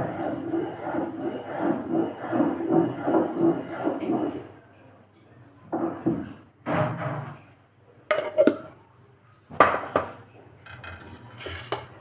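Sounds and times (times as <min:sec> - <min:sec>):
dishes and utensils clinking: 0:08.1 - 0:08.7.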